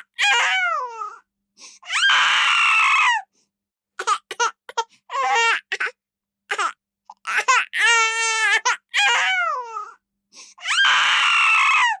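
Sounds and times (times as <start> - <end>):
infant crying: 4.0 - 10.0.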